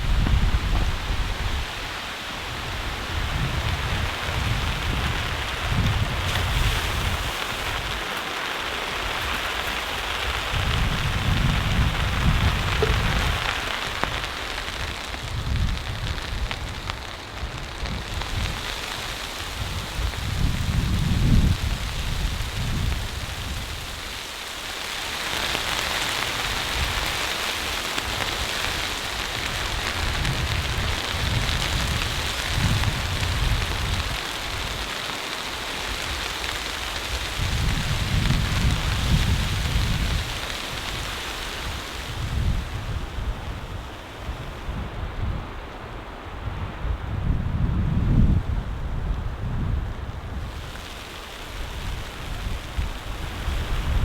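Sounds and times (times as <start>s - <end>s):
blizzard wind gusting: 0.0s - 24.2s, 25.4s - 54.0s
hiss of wind-driven snow: 0.0s - 54.0s.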